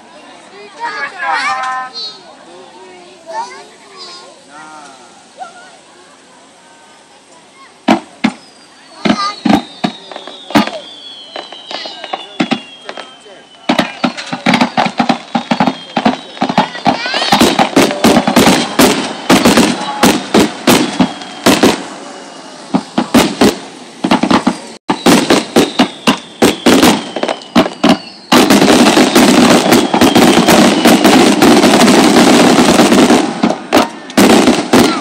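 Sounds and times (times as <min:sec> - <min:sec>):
fireworks bangs: 0:00.6 - 0:02.3, 0:06.8 - 0:35.0
faint falling whistles: 0:08.2 - 0:17.5, 0:20.8 - 0:23.0, 0:24.9 - 0:31.4.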